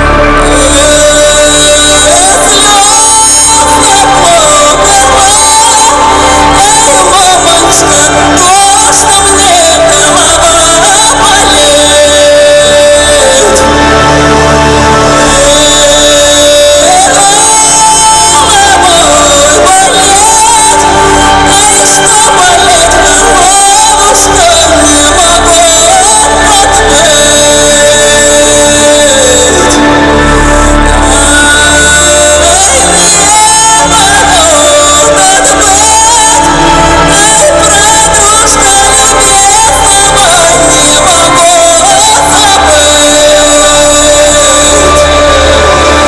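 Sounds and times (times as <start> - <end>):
live rock band with singing: 0.0 - 46.0
wavering lead melody: 0.0 - 46.0.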